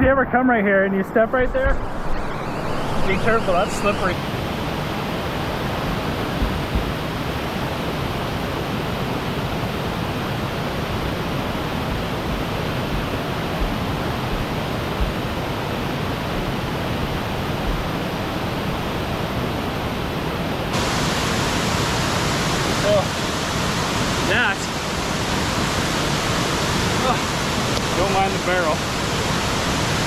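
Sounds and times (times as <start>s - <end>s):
waterfall rushing: 2.2s - 30.0s
low bumps on microphone: 5.8s - 7.0s.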